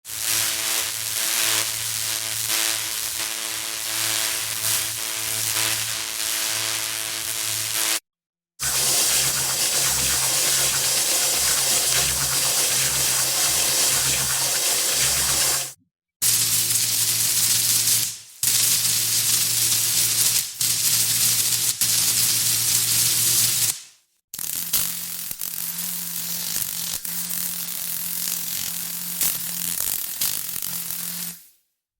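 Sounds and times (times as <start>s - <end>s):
synthesized shock-wave effects: 8.6s - 15.7s.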